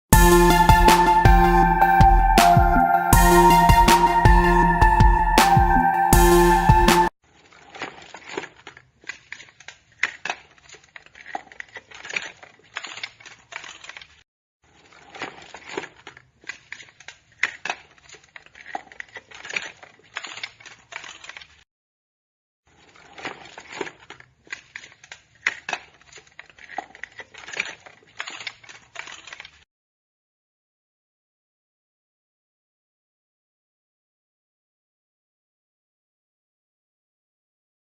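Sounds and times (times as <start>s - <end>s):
objects cracking and crunching: 7.4s - 21.6s, 22.7s - 29.6s.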